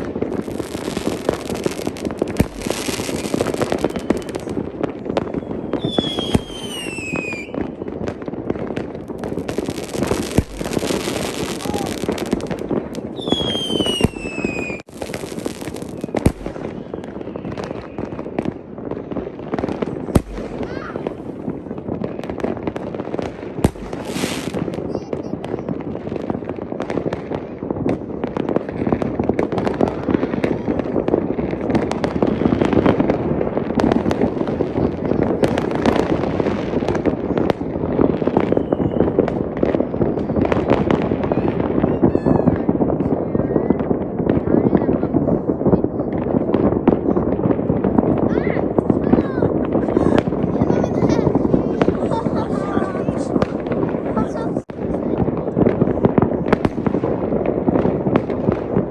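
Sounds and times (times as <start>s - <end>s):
fireworks bangs and crackles: 0.0s - 58.9s
falling firework whistle: 2.4s - 4.6s, 5.2s - 8.0s, 13.2s - 14.9s, 15.6s - 18.3s, 38.0s - 39.4s.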